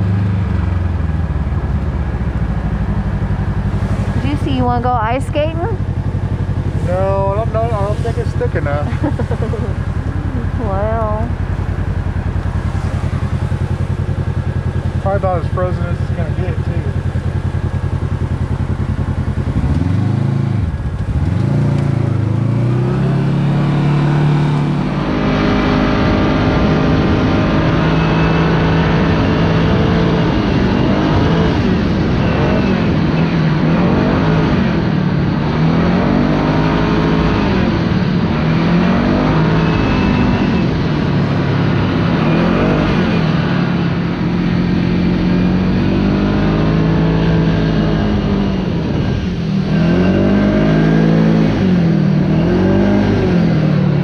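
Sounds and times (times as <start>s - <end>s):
steady rush of noise: 0.0s - 19.4s
utility vehicle engine revving: 0.0s - 54.0s.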